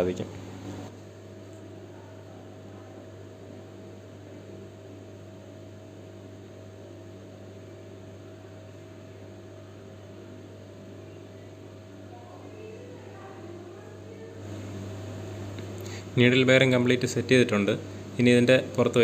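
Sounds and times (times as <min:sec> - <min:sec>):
low electrical hum: 0:00.0 - 0:19.0.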